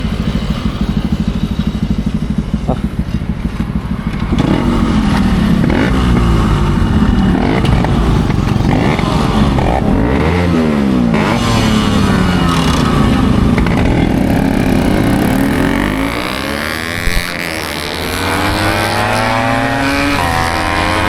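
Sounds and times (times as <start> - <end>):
motorcycle engine idling: 0.0 - 10.1
motorcycle engines revving: 0.0 - 21.0.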